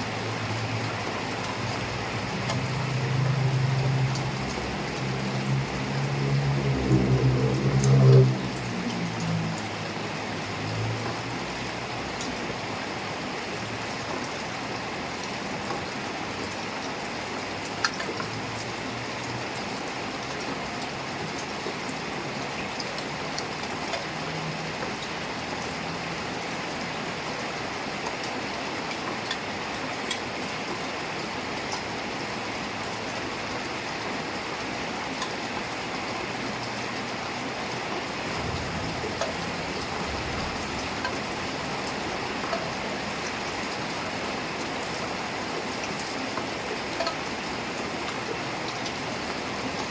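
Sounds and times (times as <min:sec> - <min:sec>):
heavy rain falling: 0:00.0 - 0:49.9
water drips: 0:00.1 - 0:12.9, 0:31.6 - 0:49.9.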